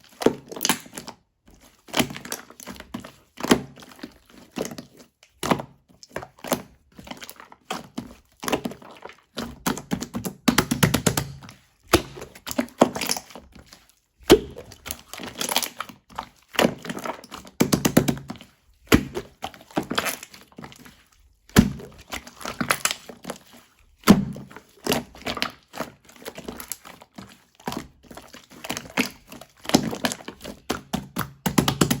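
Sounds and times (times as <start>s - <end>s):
slime clicking and popping: 9.6s - 13.2s, 14.3s - 15.8s, 17.6s - 18.3s, 28.8s - 32.0s.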